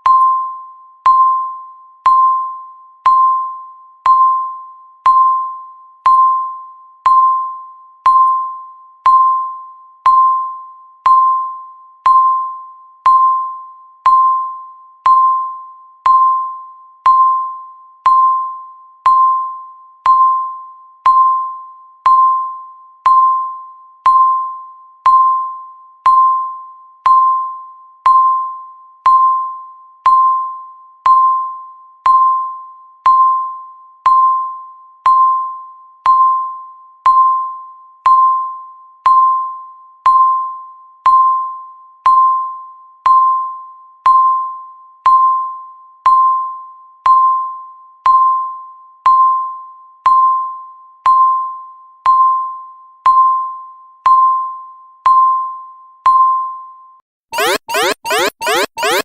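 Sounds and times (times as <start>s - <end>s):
timer tick ping: 0.0s - 16.5s, 20.0s - 20.5s, 23.0s - 23.5s, 24.1s - 27.5s, 57.4s - 59.0s.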